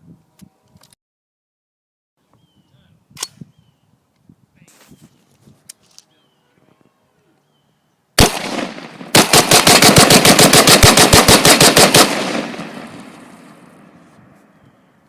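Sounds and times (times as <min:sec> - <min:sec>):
rapid automatic gunfire: 0:08.2 - 0:13.1
gunshots: 0:08.2 - 0:14.0
gunfire echo: 0:08.2 - 0:14.1.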